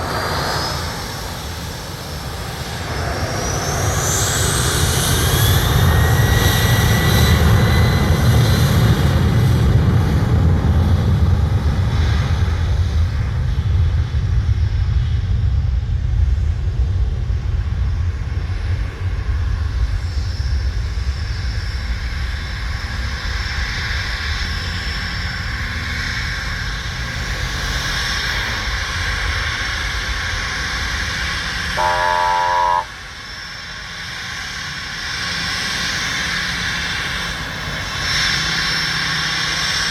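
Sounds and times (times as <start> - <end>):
jet airliner taking off: 0.0 - 39.9
short horn-like tone: 31.8 - 33.0.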